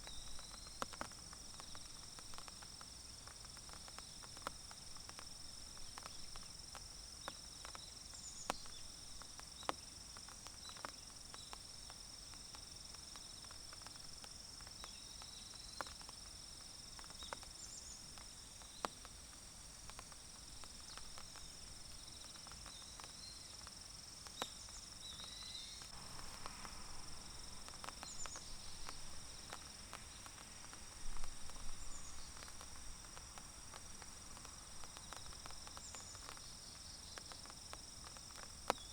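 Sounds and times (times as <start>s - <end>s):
insects trilling: 0.0s - 38.9s
raindrops ticking on leaves: 0.0s - 38.9s
bird chirps: 24.4s - 25.9s.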